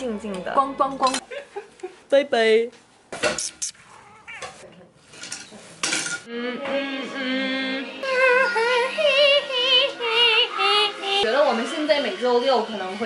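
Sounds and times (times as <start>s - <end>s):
tableware clinking: 4.4s - 6.3s
person singing with vibrato: 6.3s - 11.2s.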